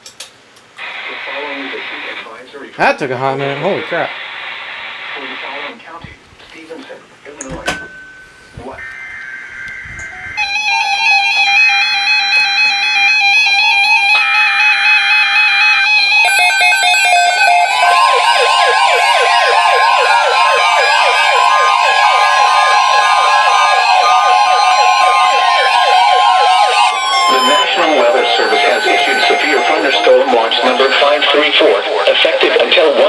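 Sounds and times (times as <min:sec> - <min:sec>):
warbling electronic alarm tones: 0:07.4 - 0:32.0
fast-repeating alarm chirps: 0:07.8 - 0:31.8
falling siren-like sweeps: 0:08.2 - 0:31.8
buzzing data header: 0:14.4 - 0:31.8
steady alert tone: 0:17.3 - 0:31.7.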